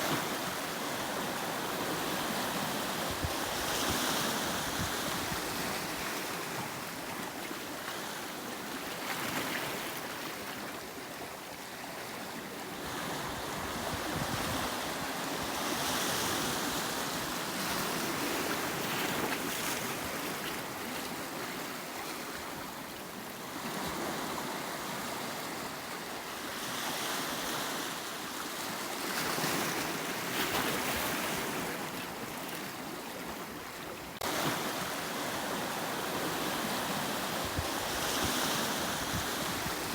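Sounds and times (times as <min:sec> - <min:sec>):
wind on microphone: 0:03.0 - 0:06.0, 0:12.9 - 0:16.7, 0:36.8 - 0:39.9
waves breaking on rocky shore: 0:34.2 - 0:39.9.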